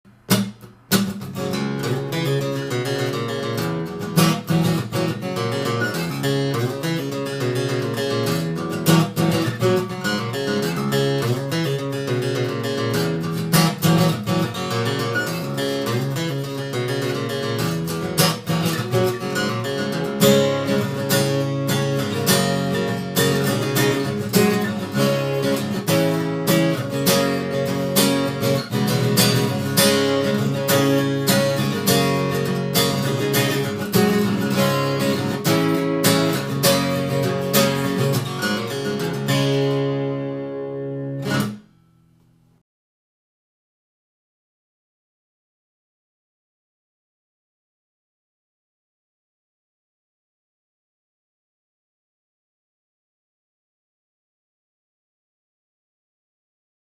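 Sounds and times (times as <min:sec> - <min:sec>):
acoustic guitar strumming chords: 0:00.1 - 0:42.1.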